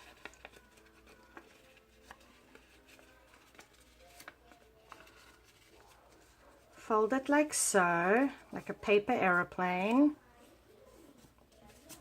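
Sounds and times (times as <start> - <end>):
paper being folded and creased: 0.0 - 6.8, 9.4 - 12.0.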